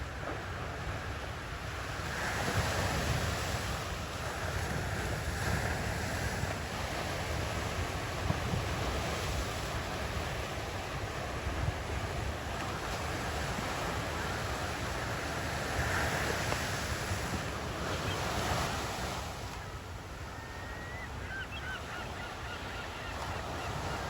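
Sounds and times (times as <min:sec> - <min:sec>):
ocean surf washing on beach: 0:00.0 - 0:20.4
faint bird calls: 0:19.6 - 0:24.0.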